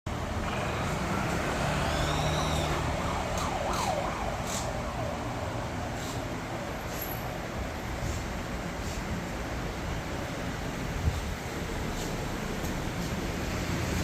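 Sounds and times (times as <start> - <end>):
traffic noise: 0.0 - 14.0
siren wail: 0.6 - 5.9.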